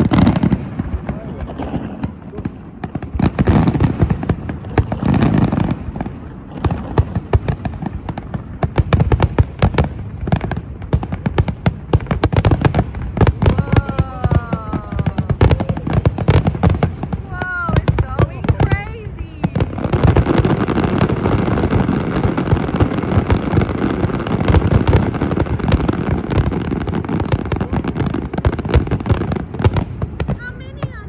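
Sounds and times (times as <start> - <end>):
firework crackling: 0.0 - 31.0
firework shells booming: 0.0 - 31.0.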